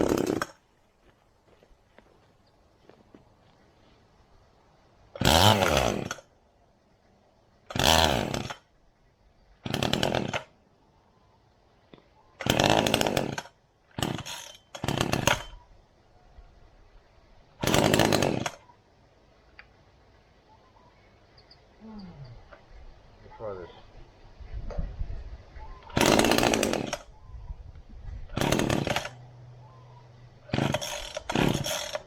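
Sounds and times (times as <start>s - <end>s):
chainsaw engine cranking: 0.0s - 0.6s, 5.2s - 6.3s, 7.7s - 8.7s, 9.6s - 10.5s, 12.4s - 15.6s, 17.6s - 18.6s, 25.9s - 27.1s, 28.3s - 29.4s, 30.4s - 32.0s
chainsaw recoil starter pulls: 0.0s - 0.6s, 5.2s - 6.3s, 7.7s - 8.6s, 9.6s - 10.5s, 12.4s - 15.6s, 17.6s - 18.6s, 25.9s - 27.1s, 28.3s - 29.2s, 30.4s - 32.0s.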